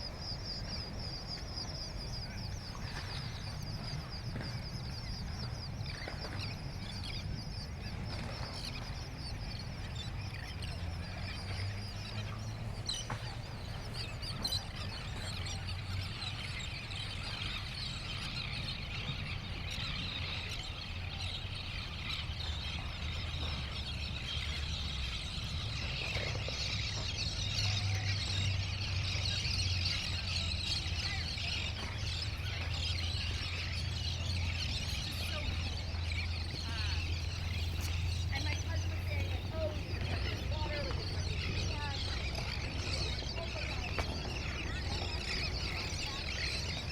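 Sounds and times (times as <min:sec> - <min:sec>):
birds chirping: 0:00.0 - 0:46.9
steady low rumble: 0:32.5 - 0:46.9.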